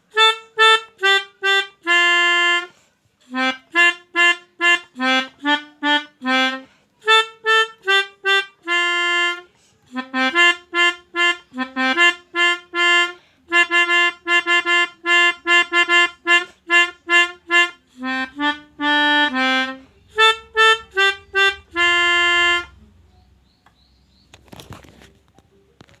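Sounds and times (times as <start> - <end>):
musical air horn honking a tune: 0.1 - 22.8
faint rustling: 24.1 - 26.0.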